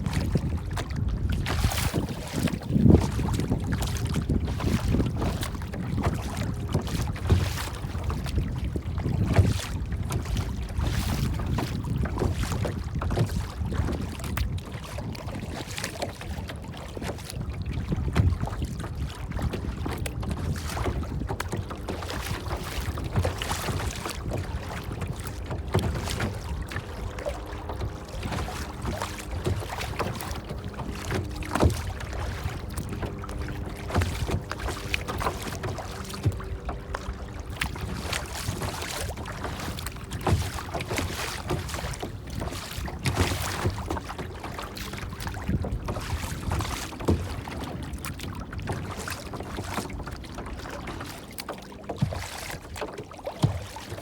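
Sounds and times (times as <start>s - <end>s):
water splashing and lapping: 0.0s - 54.0s.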